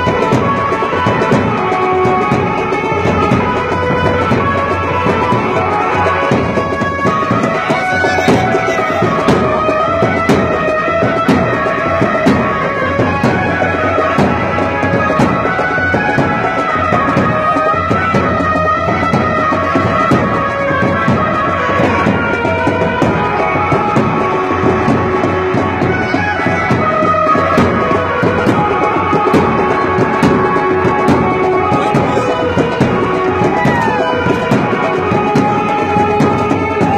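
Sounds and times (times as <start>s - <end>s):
loud music with drums: 0.0s - 36.9s
percussion beat: 0.0s - 36.9s
drone-like tones: 7.6s - 9.8s.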